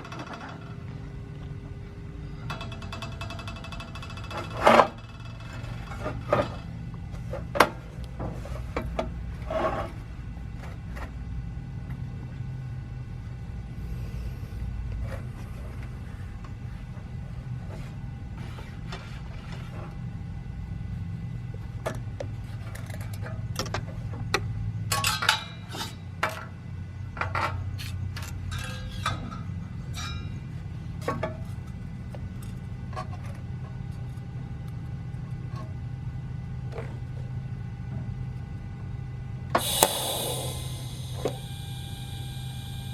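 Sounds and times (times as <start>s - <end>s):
steady electrical hum: 39.6s - 42.9s.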